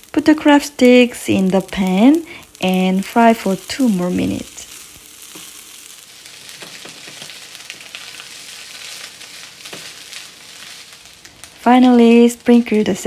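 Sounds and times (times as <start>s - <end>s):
rice sizzling in a pan: 0.0s - 13.0s
spatula scraping pan: 3.1s - 12.3s.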